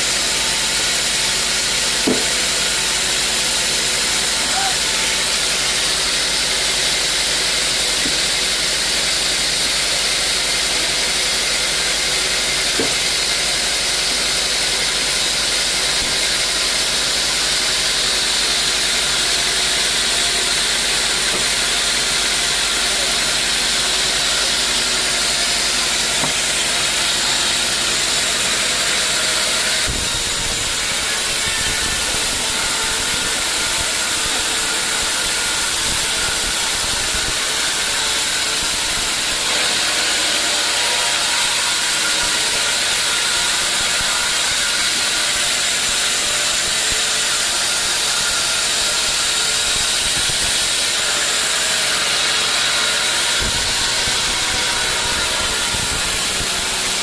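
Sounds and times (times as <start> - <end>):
sawmill machinery hissing: 0.0 - 57.0.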